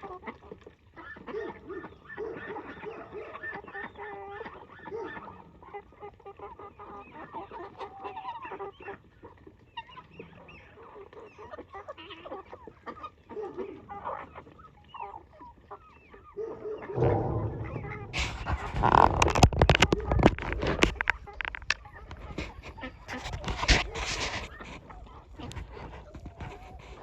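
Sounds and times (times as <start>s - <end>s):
loud rough noise: 17.0s - 19.9s
chickens clucking: 20.8s - 27.0s.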